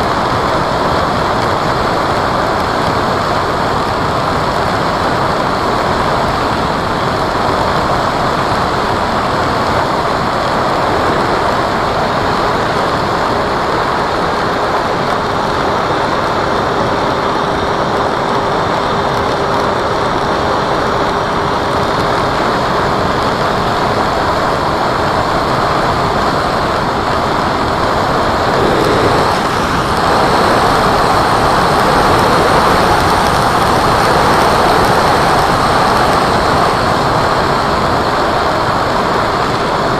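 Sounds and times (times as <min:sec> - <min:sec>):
faint steady whine: 0:00.0 - 0:39.9
model airplane propeller rushing: 0:00.0 - 0:39.9.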